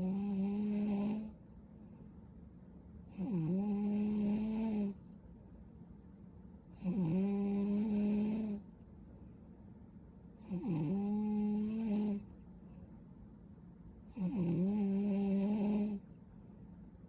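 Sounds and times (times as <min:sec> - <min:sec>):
woman snoring: 0:00.0 - 0:01.4, 0:03.1 - 0:05.0, 0:06.8 - 0:08.6, 0:10.4 - 0:12.3, 0:14.1 - 0:16.0.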